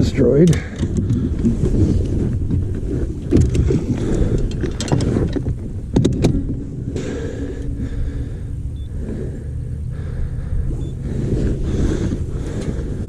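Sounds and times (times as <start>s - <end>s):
wind buffeting microphone: 0.0s - 13.0s
sharp knocks and clicks: 0.4s - 1.7s, 3.2s - 6.6s.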